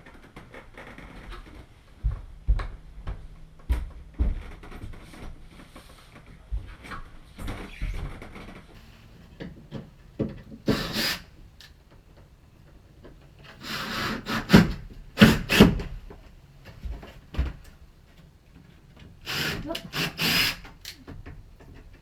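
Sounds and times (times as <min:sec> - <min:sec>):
short rubbing scrapes: 0:10.5 - 0:11.4, 0:13.5 - 0:15.8, 0:19.2 - 0:20.7.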